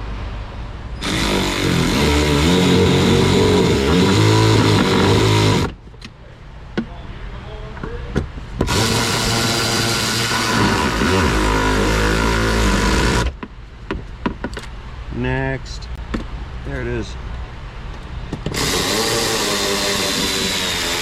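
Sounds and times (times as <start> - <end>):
cordless power tool running: 1.0 - 5.8, 8.6 - 13.4, 18.5 - 21.0.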